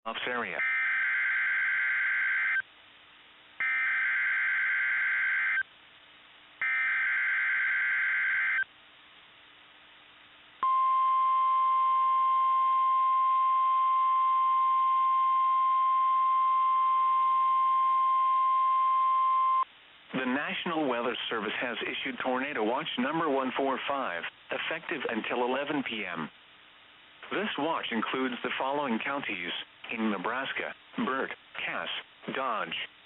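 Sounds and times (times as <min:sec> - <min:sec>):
long pure alert tone: 0:10.6 - 0:19.6.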